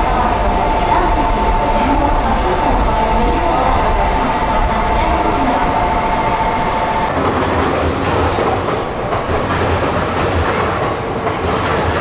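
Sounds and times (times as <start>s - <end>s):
steady whine: 0.0s - 9.6s
train rumble: 0.0s - 12.0s
train wheels clacking: 0.0s - 12.0s.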